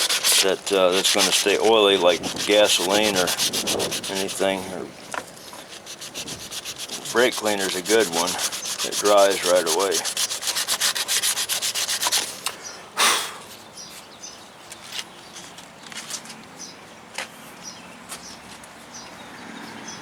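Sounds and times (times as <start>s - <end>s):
hand scrubbing wiring: 0.0s - 12.6s.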